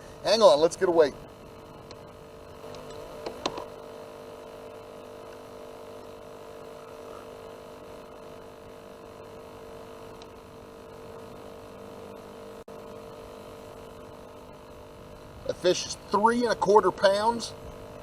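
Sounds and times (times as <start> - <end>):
electrical hum: 0.0 - 18.0.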